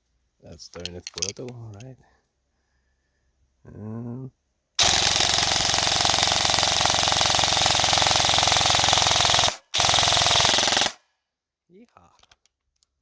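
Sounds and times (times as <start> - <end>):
airsoft gun firing full auto: 4.8 - 11.0.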